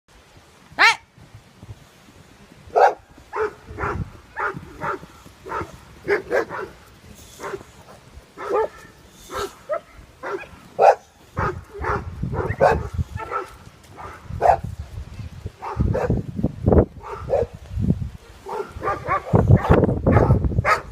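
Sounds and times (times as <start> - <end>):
dog barking: 2.7 - 6.8, 7.4 - 7.7, 8.4 - 14.7, 15.6 - 16.2, 17.0 - 17.6, 18.4 - 20.9.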